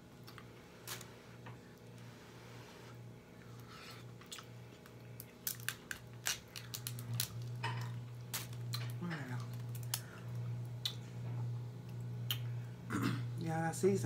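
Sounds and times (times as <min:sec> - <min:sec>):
steady low hum: 0:00.0 - 0:14.0
person chewing and smacking: 0:03.4 - 0:11.0, 0:11.8 - 0:12.6
sharp clicks and crunches: 0:04.2 - 0:10.1.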